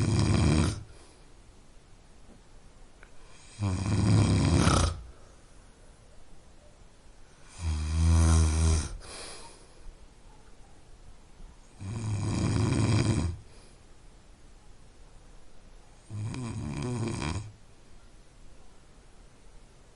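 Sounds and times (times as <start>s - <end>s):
man snoring: 0.0s - 0.9s, 3.3s - 5.1s, 7.4s - 9.1s, 11.8s - 13.5s, 16.1s - 17.5s.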